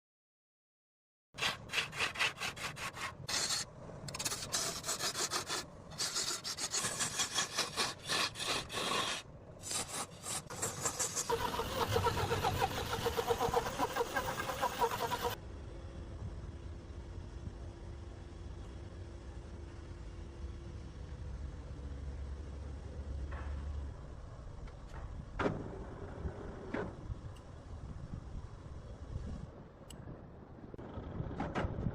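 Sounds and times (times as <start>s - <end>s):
tools rasping and sawing wood: 1.4s - 15.4s.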